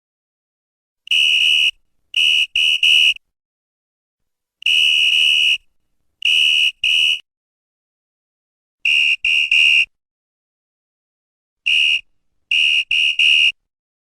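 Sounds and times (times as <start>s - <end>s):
referee's whistle blasts: 6.3s - 7.2s, 11.7s - 13.6s.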